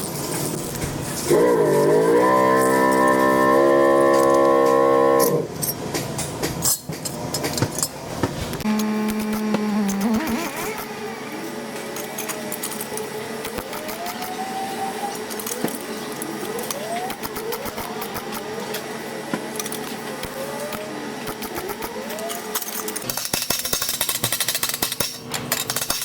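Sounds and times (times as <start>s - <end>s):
steady hum: 7.9s - 23.1s
short rising tones: 8.6s - 11.4s.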